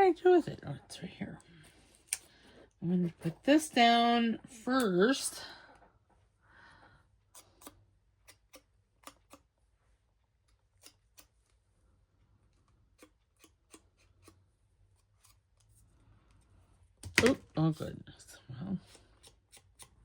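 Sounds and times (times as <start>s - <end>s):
scissors snipping paper: 10.4s - 11.4s, 12.7s - 15.6s, 18.8s - 20.0s.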